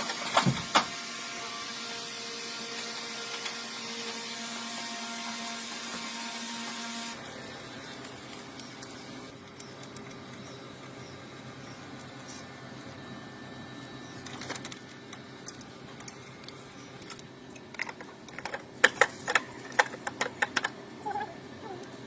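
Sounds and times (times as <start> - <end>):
parts clicking and tapping: 14.2 - 20.8.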